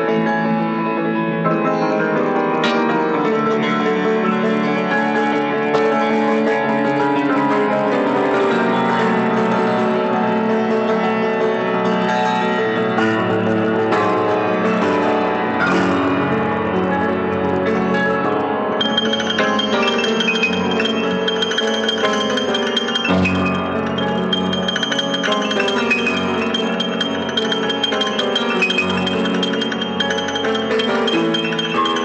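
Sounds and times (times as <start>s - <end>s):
prepared piano ringing notes: 18.8s - 32.0s.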